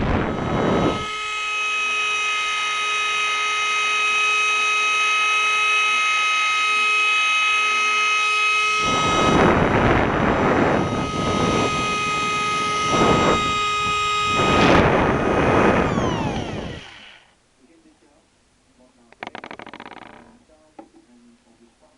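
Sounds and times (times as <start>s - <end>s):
loud rushing air: 0.0s - 1.0s
blower impeller whine: 0.0s - 17.4s.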